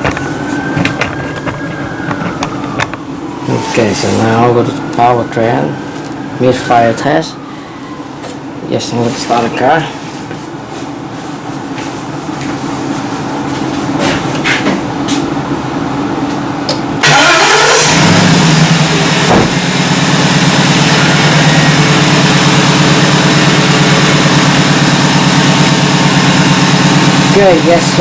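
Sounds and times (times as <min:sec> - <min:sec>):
engine cranking and idling: 0:00.0 - 0:04.9, 0:16.8 - 0:28.0.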